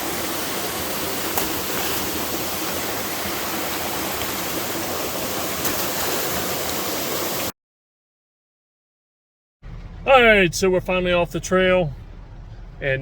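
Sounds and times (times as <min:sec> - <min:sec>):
fast-flowing creek water: 0:00.0 - 0:07.5.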